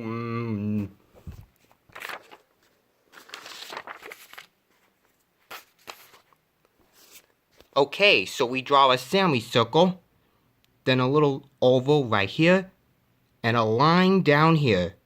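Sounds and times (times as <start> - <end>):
rustling: 0.9 - 7.8.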